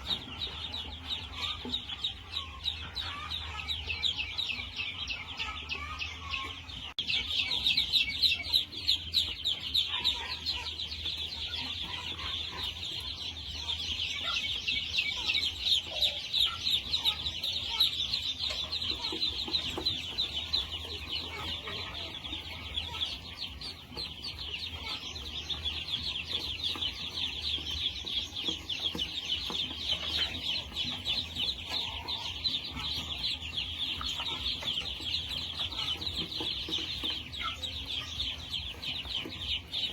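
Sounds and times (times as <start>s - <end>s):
chickens clucking: 0.0s - 39.9s.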